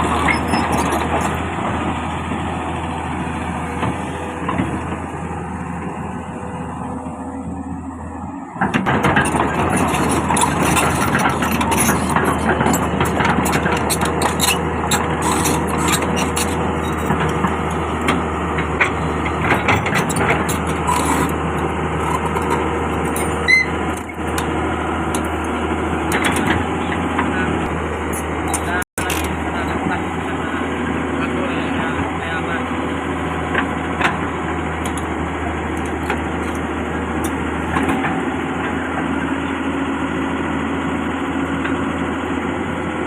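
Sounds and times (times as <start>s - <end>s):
excavator diesel engine: 0.0s - 43.0s
brief squeak: 0.2s - 0.9s, 23.4s - 23.8s
knocks and rattles: 8.6s - 23.4s.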